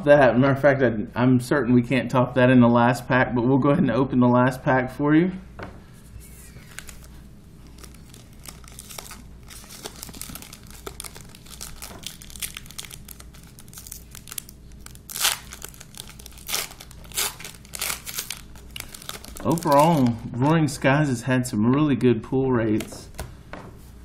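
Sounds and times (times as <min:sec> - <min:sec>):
foil wrapper crinkling: 0:06.2 - 0:20.2
foil tearing open: 0:06.6 - 0:20.2.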